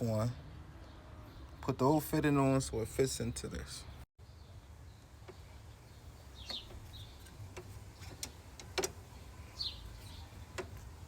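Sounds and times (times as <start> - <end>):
bird chirping: 3.6 - 11.0.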